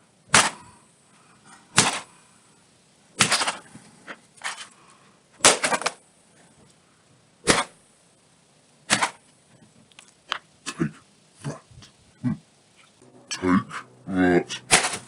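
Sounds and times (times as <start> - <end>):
sledgehammer smashing tablet: 3.2 - 3.7, 5.4 - 6.0, 14.7 - 15.0.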